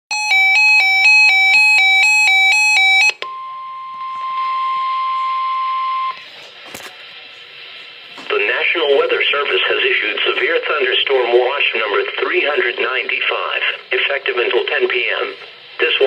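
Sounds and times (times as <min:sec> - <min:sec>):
electronic alarm warbling: 0:00.1 - 0:06.2.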